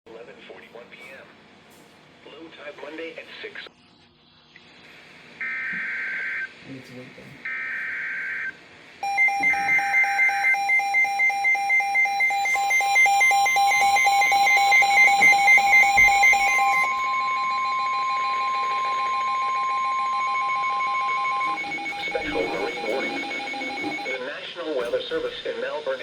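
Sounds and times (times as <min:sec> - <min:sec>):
long steady alarm tone: 0:07.5 - 0:24.4
receiver alert beeping: 0:07.5 - 0:25.5
warbling data tones: 0:08.4 - 0:25.5.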